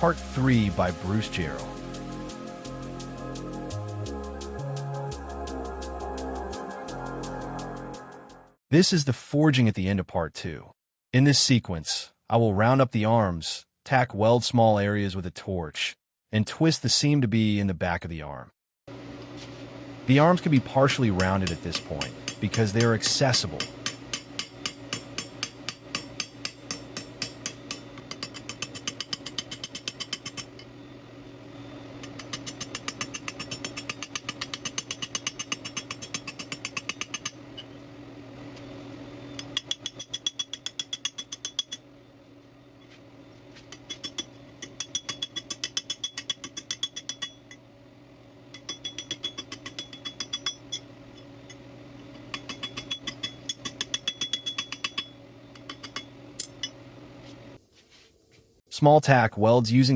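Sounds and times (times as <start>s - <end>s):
steady low hum: 18.9s - 57.6s.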